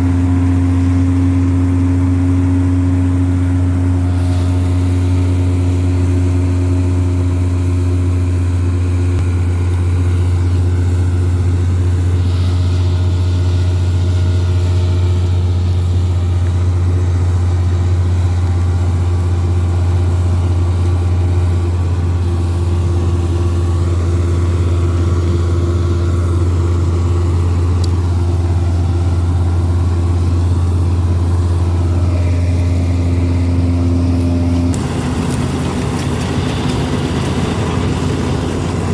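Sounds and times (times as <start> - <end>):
combine harvester engine drone: 0.0 - 38.9.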